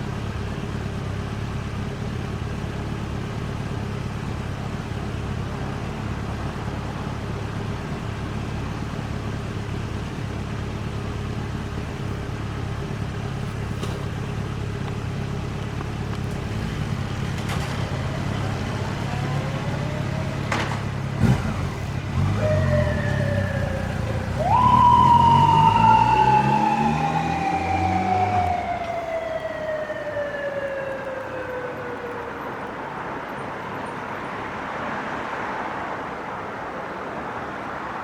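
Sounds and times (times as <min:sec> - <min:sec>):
road traffic engines: 0:00.0 - 0:38.0
motorcycle siren: 0:16.0 - 0:34.1.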